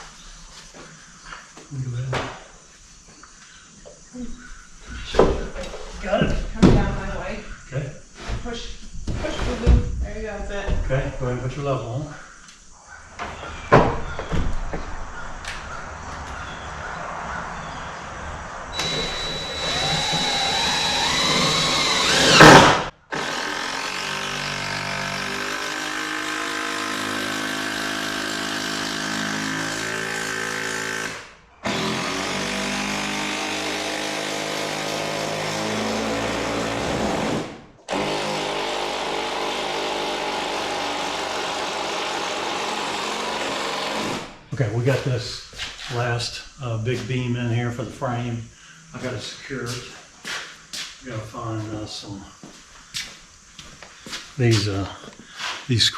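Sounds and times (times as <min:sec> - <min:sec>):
power drill whining: 0:18.7 - 0:44.4.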